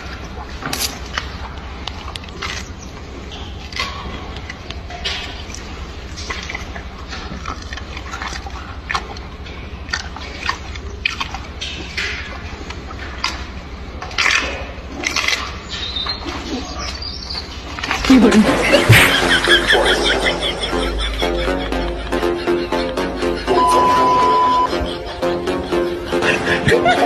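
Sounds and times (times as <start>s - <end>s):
ape chewing and lip-smacking: 0.4s - 18.1s.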